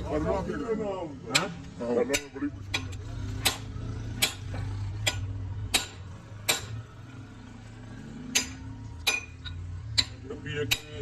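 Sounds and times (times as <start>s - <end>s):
sharp metallic taps: 1.2s - 6.9s, 8.2s - 11.0s.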